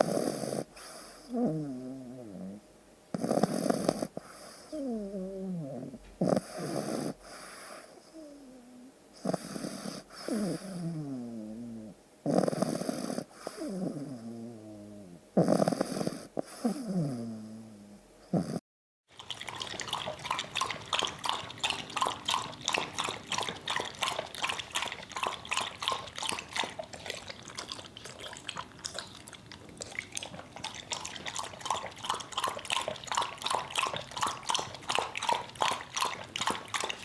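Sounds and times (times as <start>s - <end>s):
dog lapping water: 19.1s - 37.0s.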